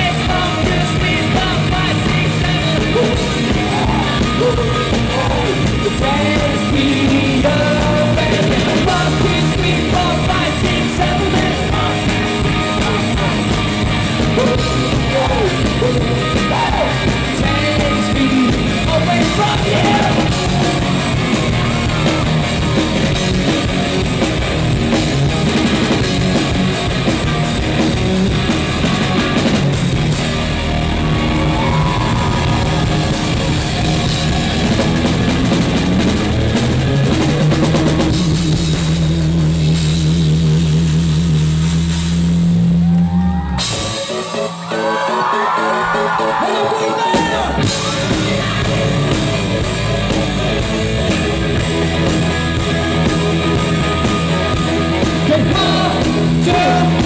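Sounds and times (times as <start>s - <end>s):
person singing: 0.0s - 23.1s, 54.1s - 57.0s
drum kit: 0.0s - 57.0s
electric guitar: 0.0s - 57.0s.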